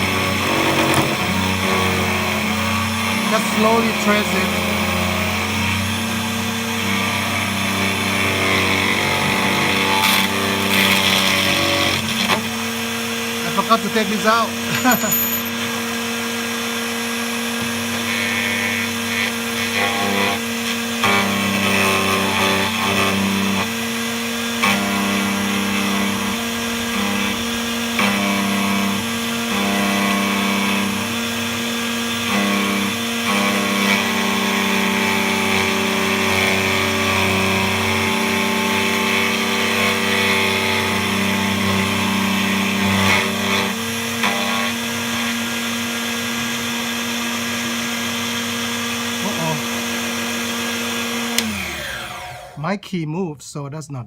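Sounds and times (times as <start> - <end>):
cutter grinding on key: 0.0 - 16.6, 51.1 - 52.0
key cutting machine motor hum: 0.0 - 52.6.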